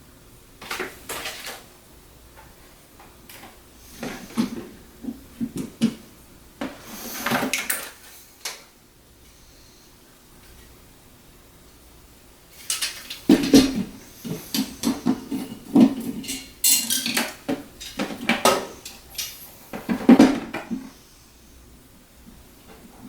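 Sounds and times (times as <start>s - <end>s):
hard parts clattering and knocking: 12.6s - 20.9s.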